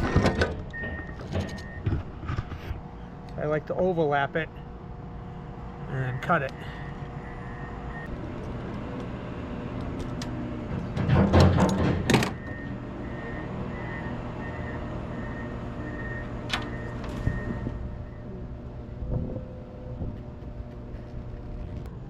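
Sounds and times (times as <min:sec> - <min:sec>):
diesel engine idling: 0:04.4 - 0:11.0, 0:12.4 - 0:20.6
high electronic beeps: 0:05.9 - 0:08.1
clattering knocks: 0:10.7 - 0:12.4.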